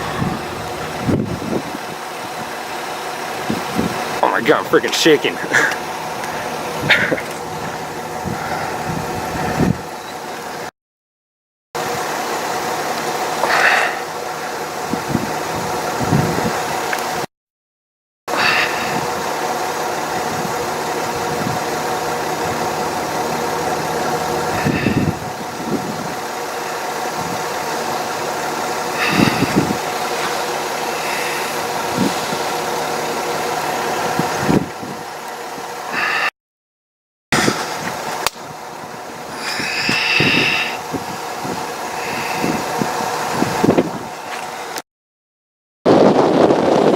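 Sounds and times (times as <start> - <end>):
car engine idling: 0.0 - 1.5, 7.1 - 9.9, 21.6 - 25.3.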